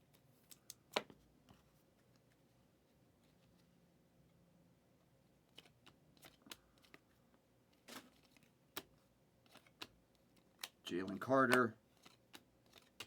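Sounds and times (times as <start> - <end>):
football cards flipped by hand: 0.0 - 2.4, 5.4 - 13.0.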